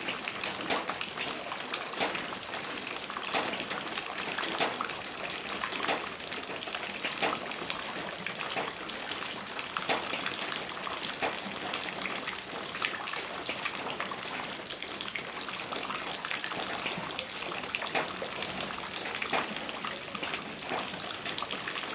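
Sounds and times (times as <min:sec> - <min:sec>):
rain drops pattering: 0:00.0 - 0:21.9.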